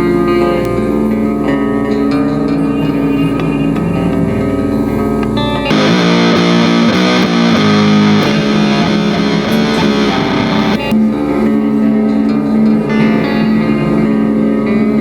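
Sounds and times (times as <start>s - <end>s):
distorted electric guitar: 0.0s - 15.0s
bass guitar: 5.6s - 10.9s.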